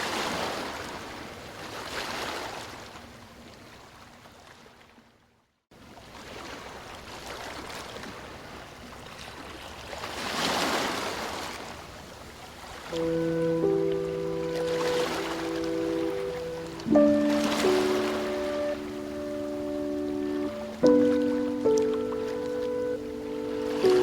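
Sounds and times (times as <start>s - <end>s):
ocean waves breaking on beach: 6.1s - 24.0s.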